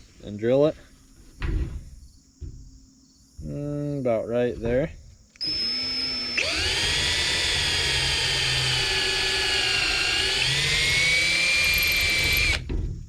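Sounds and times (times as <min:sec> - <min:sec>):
electric drill whine: 0:05.4 - 0:12.7.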